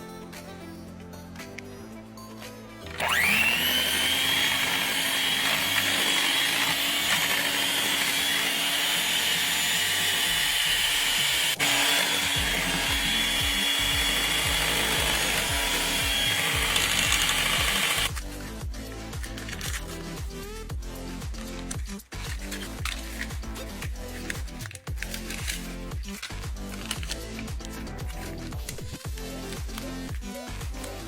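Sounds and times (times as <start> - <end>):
electric mixer whining: 2.9 - 18.2.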